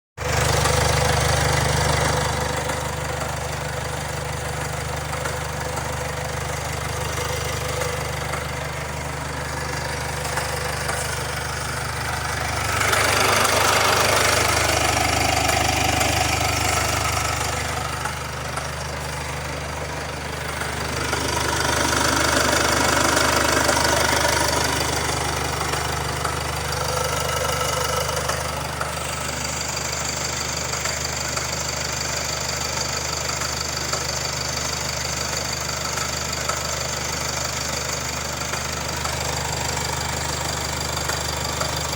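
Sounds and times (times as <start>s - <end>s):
diesel engine idling with knock: 0.2s - 41.9s.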